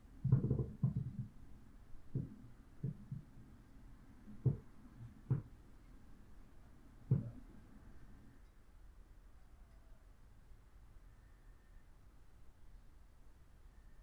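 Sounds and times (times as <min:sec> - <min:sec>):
soft low thuds: 0:04.2 - 0:05.6, 0:07.0 - 0:07.6.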